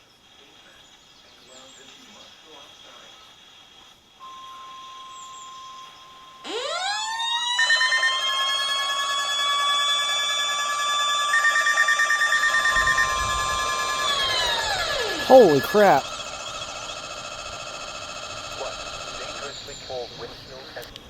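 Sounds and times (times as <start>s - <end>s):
steady warning alarm tone: 4.2s - 20.8s
siren winding: 6.4s - 15.3s.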